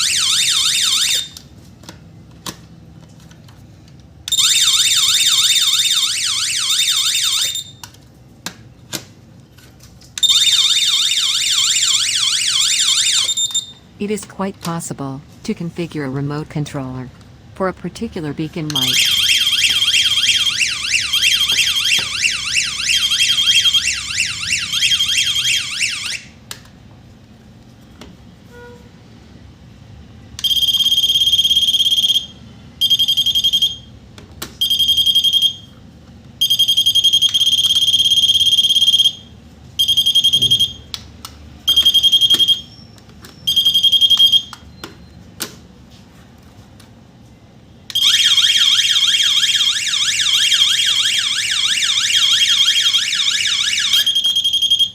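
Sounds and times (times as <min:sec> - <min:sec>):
warbling alarm siren: 0:00.0 - 0:01.4, 0:04.3 - 0:07.7, 0:10.2 - 0:13.6, 0:18.7 - 0:26.3, 0:48.0 - 0:54.9
high alarm beeps: 0:17.6 - 0:24.4.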